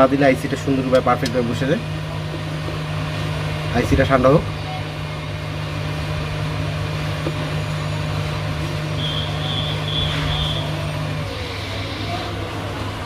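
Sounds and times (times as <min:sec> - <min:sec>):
background hum and hiss: 0:00.0 - 0:13.0
low drone: 0:02.8 - 0:13.0
short high beeps: 0:09.0 - 0:10.8.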